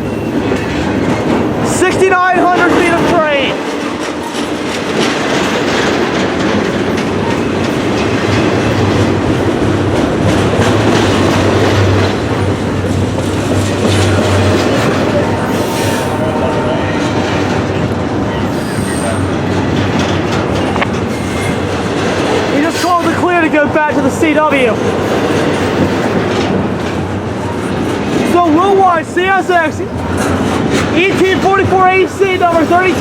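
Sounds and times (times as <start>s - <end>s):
train wheels clattering over rails: 0.0s - 33.0s
high wheel squeal: 18.3s - 19.4s, 21.1s - 21.7s.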